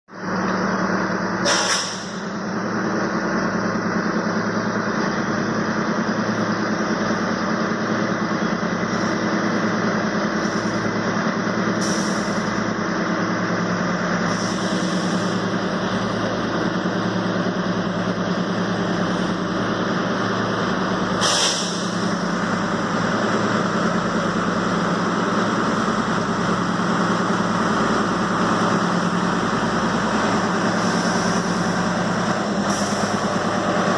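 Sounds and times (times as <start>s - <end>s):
diesel locomotive engine droning: 0.1s - 33.9s.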